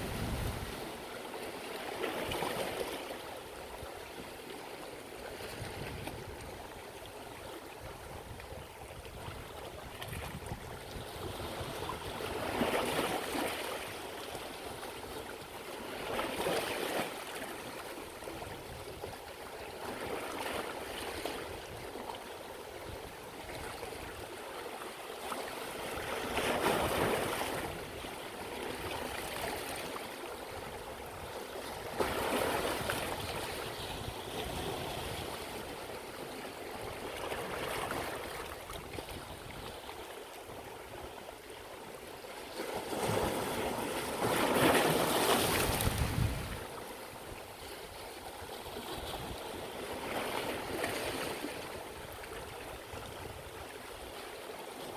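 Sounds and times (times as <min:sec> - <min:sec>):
sea waves washing onto shore: 0:00.0 - 0:03.1, 0:42.5 - 0:48.2.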